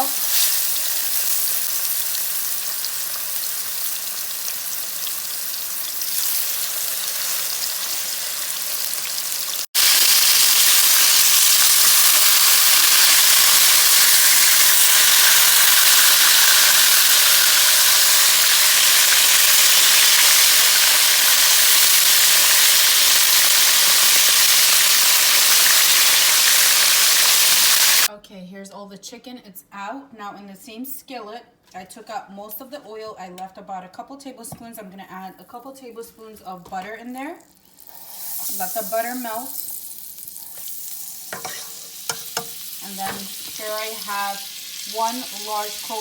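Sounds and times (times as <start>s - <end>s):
chicken frying in hot oil: 0.0s - 28.1s, 37.8s - 46.0s.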